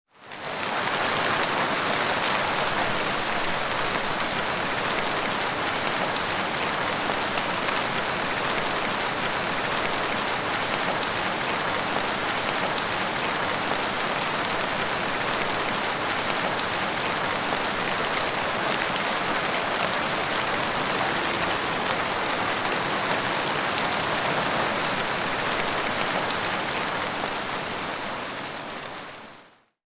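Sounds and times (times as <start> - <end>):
heavy rain falling: 0.2 - 29.6.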